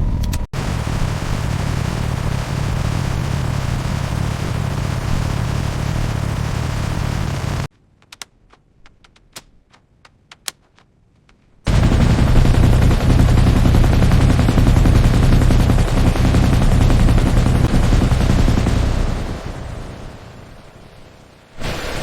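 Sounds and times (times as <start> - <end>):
rapid automatic gunfire: 0.6 - 7.7, 11.7 - 20.1.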